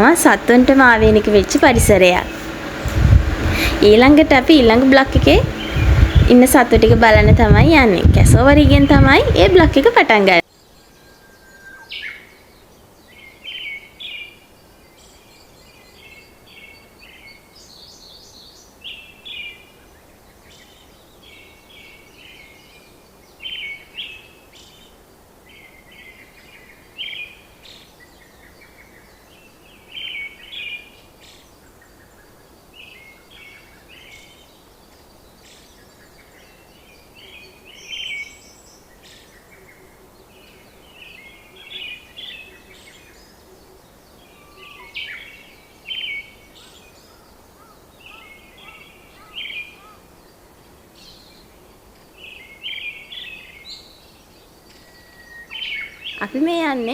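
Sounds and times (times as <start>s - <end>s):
birds chirping: 0.0s - 10.4s, 56.0s - 56.9s
faint outdoor background hiss: 0.0s - 56.9s.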